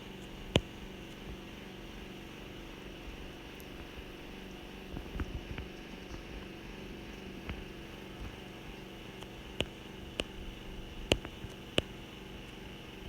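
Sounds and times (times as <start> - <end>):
steady low hum: 0.0 - 13.0
short light clicks: 11.1 - 11.9.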